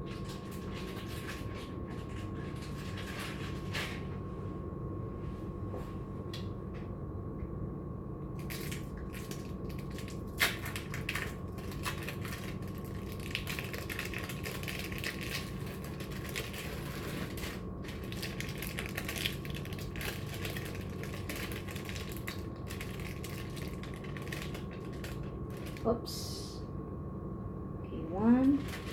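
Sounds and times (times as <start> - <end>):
crinkling handling noises: 0.0 - 4.3, 8.4 - 25.9, 28.4 - 28.9
steady low hum: 0.0 - 28.9.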